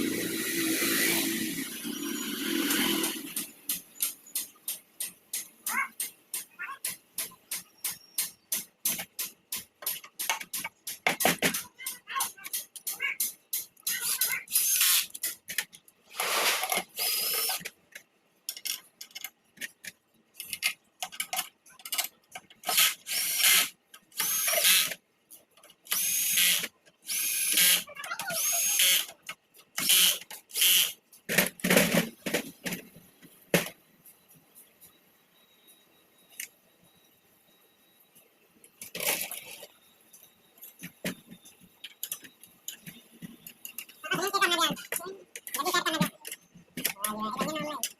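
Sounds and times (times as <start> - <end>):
power drill whining: 16.1 - 17.6, 22.7 - 25.0, 25.9 - 27.8, 28.4 - 29.1, 29.8 - 31.0.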